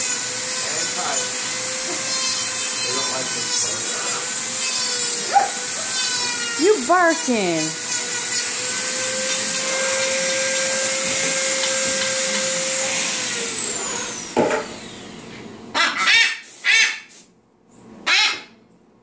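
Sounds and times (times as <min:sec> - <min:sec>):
small electric motor whirring: 0:00.0 - 0:15.2
macaw squawking: 0:02.0 - 0:03.2, 0:15.7 - 0:17.1, 0:18.0 - 0:18.6.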